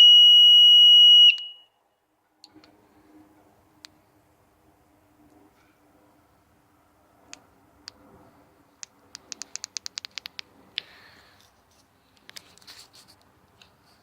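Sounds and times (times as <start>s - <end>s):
small sharp clicks: 8.8s - 10.9s.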